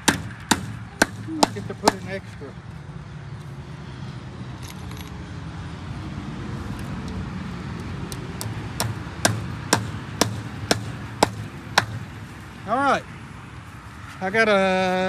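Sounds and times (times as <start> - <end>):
hammer strikes: 0.0 - 2.4, 8.4 - 12.2.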